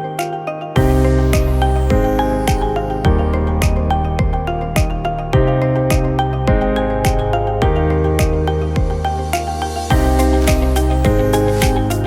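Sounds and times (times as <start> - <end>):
deep kick drums beat: 0.8 - 9.1, 9.9 - 12.0.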